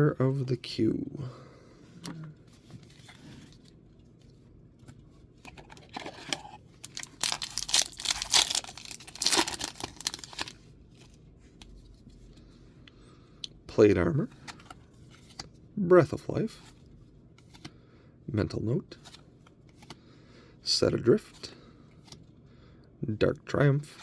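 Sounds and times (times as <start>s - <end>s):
wrapper tearing and crinkling: 6.2s - 10.6s.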